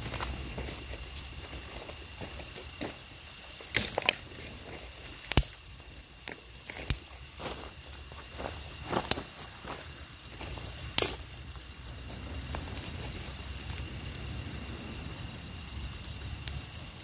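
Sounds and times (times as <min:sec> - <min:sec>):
low background rumble: 0:00.0 - 0:17.0
wooden cracks and snaps: 0:03.7 - 0:04.2.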